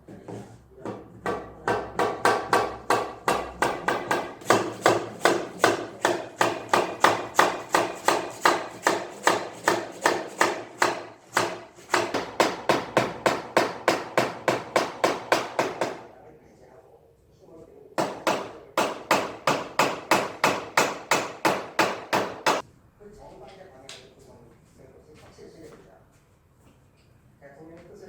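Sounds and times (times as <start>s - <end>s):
rapid hammering on wood: 0.9s - 16.1s, 18.0s - 22.6s.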